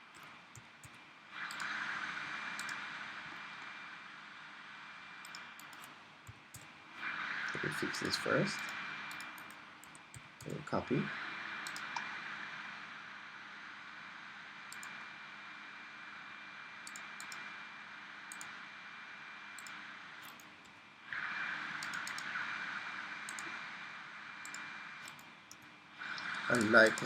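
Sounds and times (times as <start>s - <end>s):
computer mouse clicks: 0.0s - 1.8s, 2.5s - 2.9s, 5.2s - 6.8s, 7.4s - 10.6s, 11.6s - 12.2s, 14.7s - 15.0s, 16.8s - 17.5s, 18.3s - 18.6s, 19.6s - 22.4s, 23.2s - 23.6s, 24.4s - 27.0s
background hiss: 0.0s - 27.0s.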